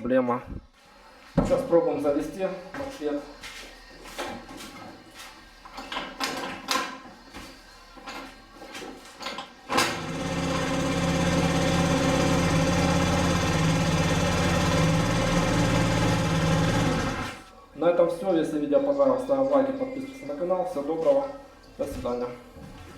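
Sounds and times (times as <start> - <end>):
small engine running: 9.8 - 17.4.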